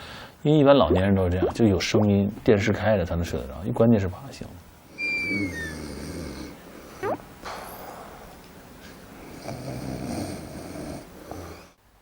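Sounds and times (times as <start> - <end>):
man snoring: 5.3 - 6.6, 9.2 - 11.8.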